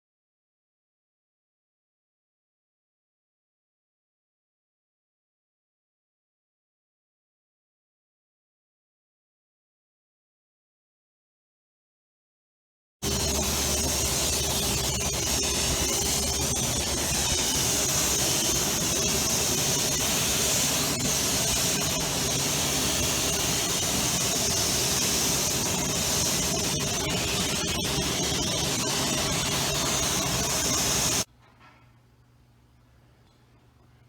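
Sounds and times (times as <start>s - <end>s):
loud hissing spray: 13.0s - 31.3s.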